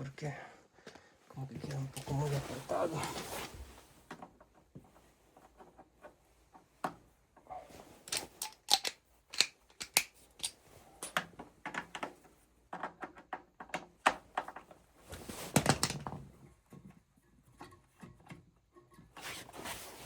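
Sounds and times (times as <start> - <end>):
clicks and knocks of metal tools: 8.0 - 11.9.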